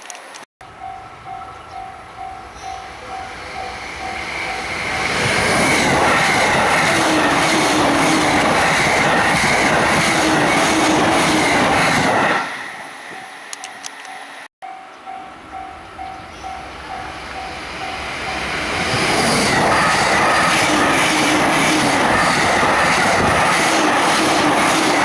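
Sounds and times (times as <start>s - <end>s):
level crossing bell dinging: 13.2s - 18.4s.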